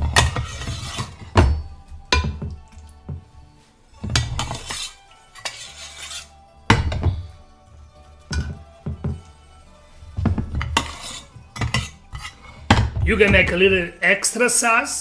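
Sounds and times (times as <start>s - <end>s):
sharp knocks on a pan: 0.0s - 3.3s, 4.0s - 5.6s, 6.7s - 7.5s, 8.2s - 9.3s, 10.1s - 13.6s
metal utensil scraping a pan: 0.0s - 13.9s.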